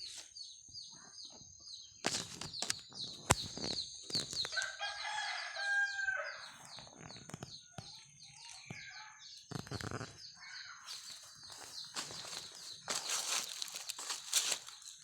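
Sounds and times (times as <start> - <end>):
rooster crowing: 4.6 - 6.4.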